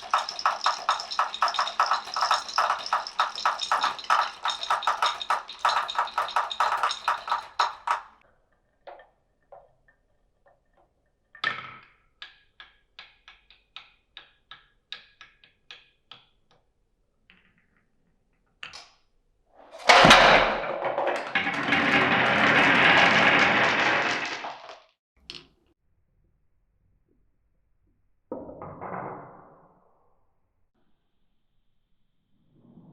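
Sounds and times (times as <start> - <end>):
loud crash: 0.0 - 8.1, 19.7 - 24.8
many marbles pouring and rolling: 0.0 - 8.2, 19.9 - 24.9
marbles rattling on track: 0.0 - 8.2, 19.9 - 24.9
ringing clacks of dropping marble: 0.0 - 8.2.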